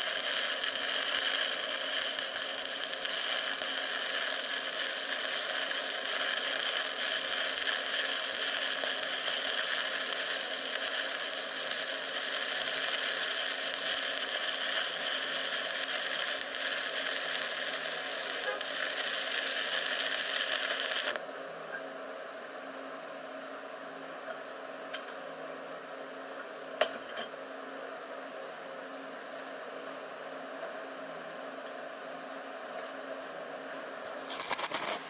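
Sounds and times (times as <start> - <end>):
welding arc crackling: 0.0 - 21.2, 34.0 - 35.0.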